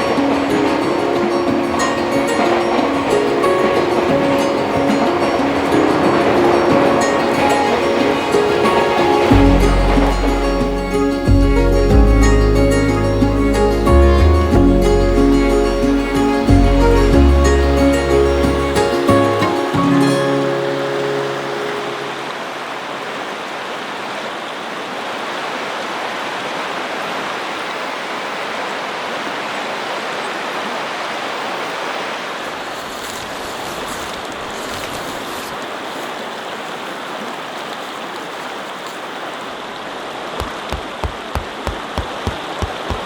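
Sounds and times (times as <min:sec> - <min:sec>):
river rushing: 0:00.0 - 0:43.0
low thumps: 0:09.3 - 0:15.2, 0:40.4 - 0:43.0.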